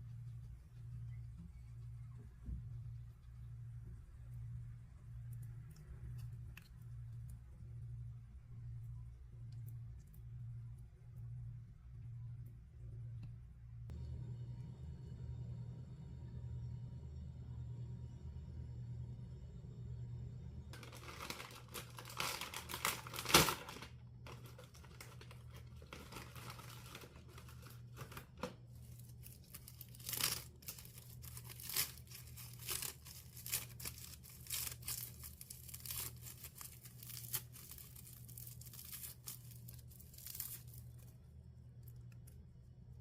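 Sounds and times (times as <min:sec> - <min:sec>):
steady low hum: 0:00.0 - 0:43.0
crinkling and rustling: 0:20.8 - 0:42.5.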